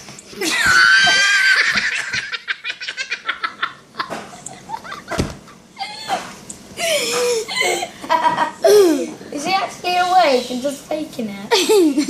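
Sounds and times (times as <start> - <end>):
stifled giggling: 11.5 - 12.0.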